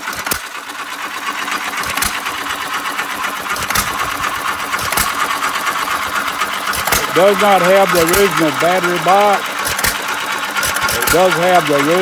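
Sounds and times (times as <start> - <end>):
engine clattering: 0.0 - 12.0
engine firing pop: 0.1 - 0.5, 1.8 - 2.3, 3.5 - 5.6, 6.7 - 7.3, 9.6 - 11.3.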